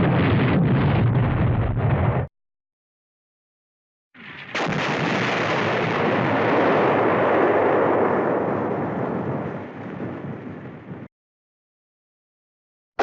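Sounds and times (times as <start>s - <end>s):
cartoon explosion rumble: 0.0s - 2.3s, 4.2s - 11.1s.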